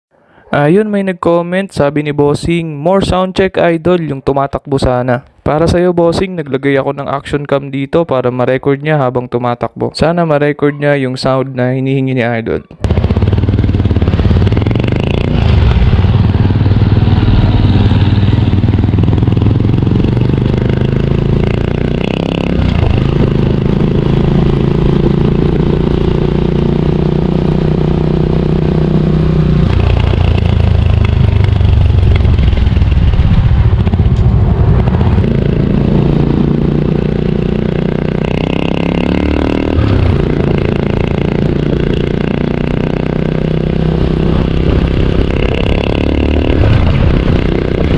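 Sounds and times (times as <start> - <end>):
motorcycle engine running: 12.8 - 47.9.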